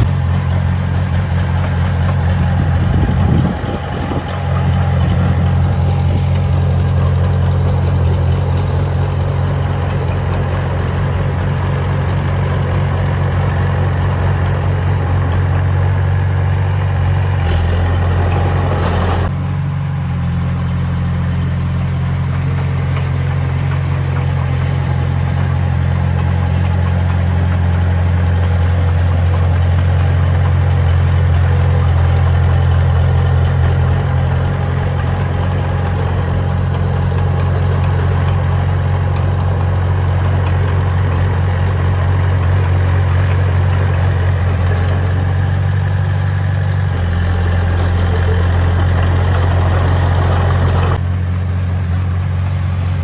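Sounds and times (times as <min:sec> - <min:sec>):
diesel engine droning: 0:00.0 - 0:53.0.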